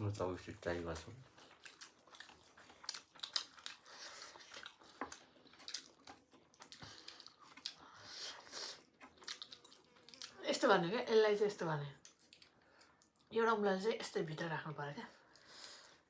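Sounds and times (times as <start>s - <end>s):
person chewing noodles: 0.2s - 10.4s, 12.0s - 13.3s
wet mouth clicks and smacks: 12.0s - 13.3s.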